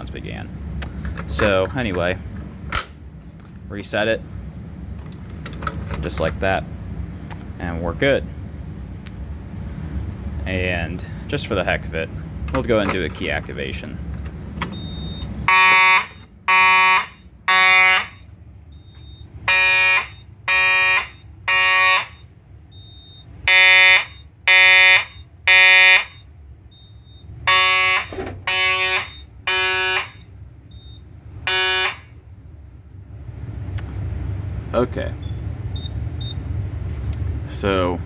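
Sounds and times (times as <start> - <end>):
buzzy fire alarm horn blasts: 14.8 - 32.3.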